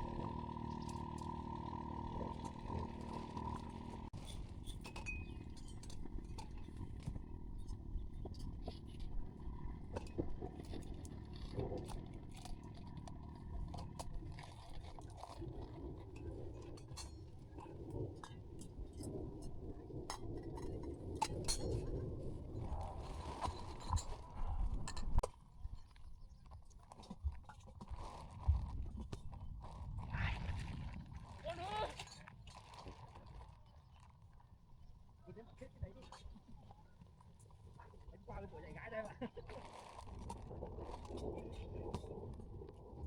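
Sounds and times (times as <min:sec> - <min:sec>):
low steady rumble: 0:00.0 - 0:25.2.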